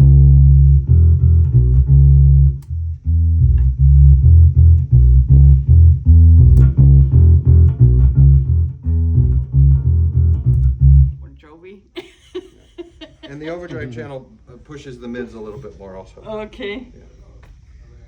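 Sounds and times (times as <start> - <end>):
overdriven electric bass riff: 0.0 - 11.3.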